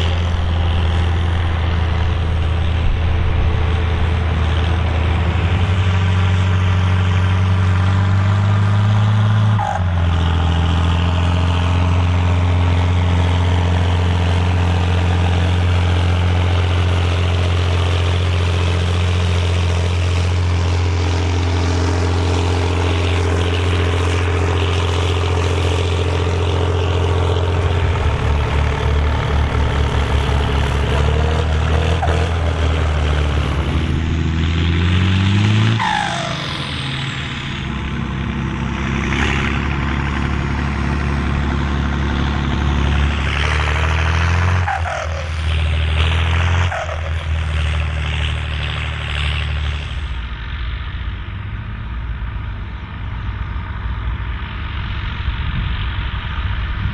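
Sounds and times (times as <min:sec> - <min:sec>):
diesel tractor engine revving: 0:00.0 - 0:56.9
high turbo whistle: 0:35.7 - 0:37.4.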